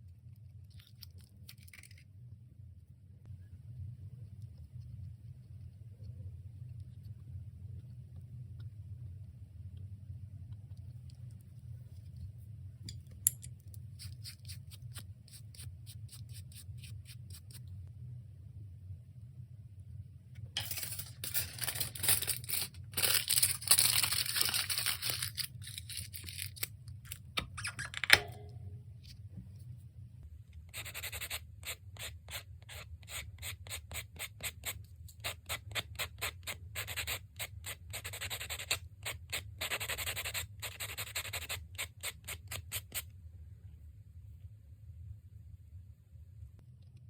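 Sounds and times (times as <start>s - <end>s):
nail file rubbing on nail: 14.0s - 17.6s.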